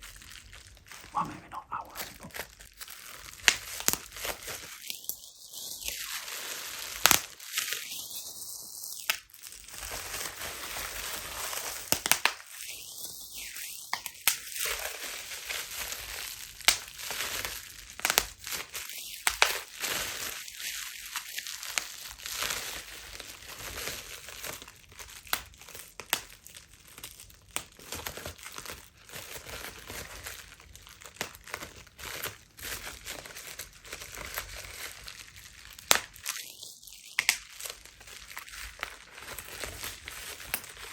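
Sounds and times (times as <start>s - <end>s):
bubble wrap crinkling: 0.0s - 40.9s
bubble wrap pops: 3.0s - 4.6s, 6.4s - 7.8s, 11.4s - 12.7s, 13.9s - 22.5s, 23.8s - 28.8s, 29.9s - 40.9s.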